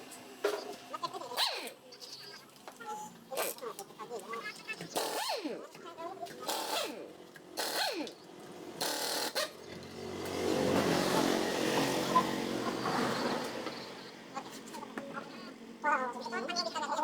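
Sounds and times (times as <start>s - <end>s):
power tool motor running: 4.9s - 5.5s, 6.4s - 7.0s, 7.6s - 14.3s.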